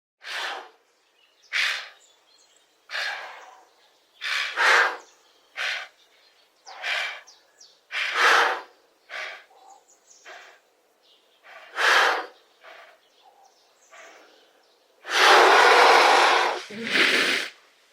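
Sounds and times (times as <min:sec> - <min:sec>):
giraffe snorting: 0:00.2 - 0:00.8, 0:02.9 - 0:05.9, 0:06.7 - 0:07.3, 0:07.9 - 0:10.6, 0:11.4 - 0:13.1, 0:15.0 - 0:17.6.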